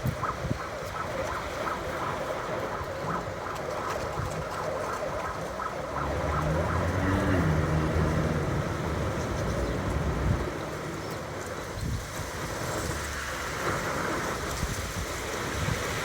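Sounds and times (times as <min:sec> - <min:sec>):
wind blowing: 0:00.0 - 0:16.0
passing vehicle engine hum: 0:05.0 - 0:14.3.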